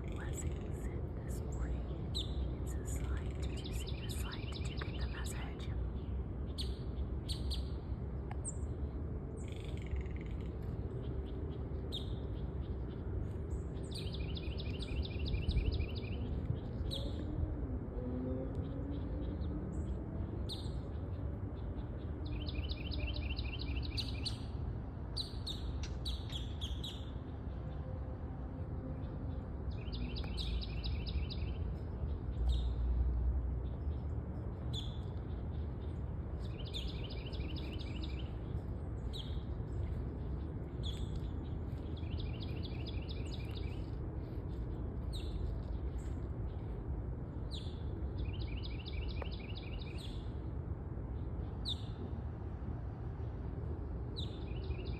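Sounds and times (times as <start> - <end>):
bird chirps: 0.0 - 5.7
low background rumble: 0.0 - 54.9.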